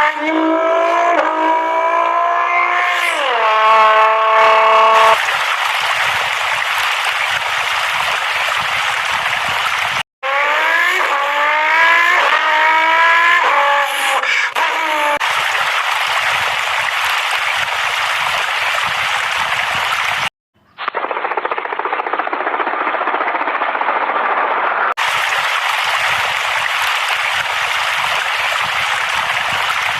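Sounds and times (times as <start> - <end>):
car engine revving through gears: 0.0 - 5.2, 10.2 - 14.3.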